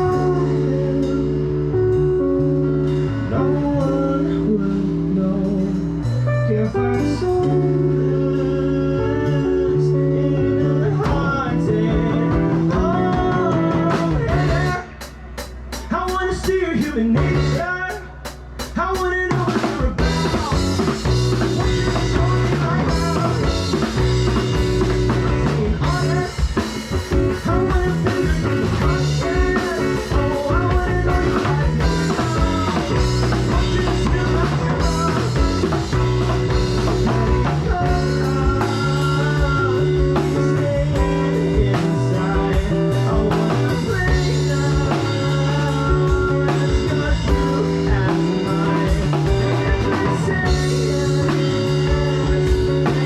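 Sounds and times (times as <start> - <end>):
bass guitar: 0.0 - 53.0
electric guitar: 0.0 - 53.0
drum kit beat: 10.7 - 53.0.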